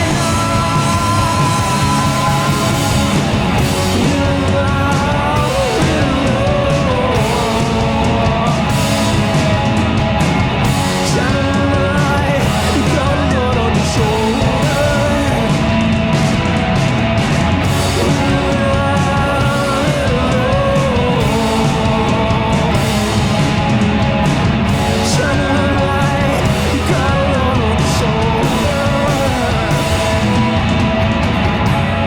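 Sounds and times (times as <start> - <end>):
drums: 0.0 - 32.0
electric guitars: 0.0 - 32.0
rock band playing live: 0.0 - 32.0.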